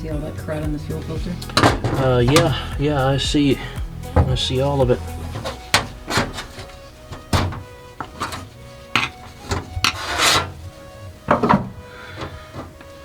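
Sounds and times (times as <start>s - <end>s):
quiet background music: 0.0s - 13.0s
scraping and rubbing strokes: 4.0s - 13.0s.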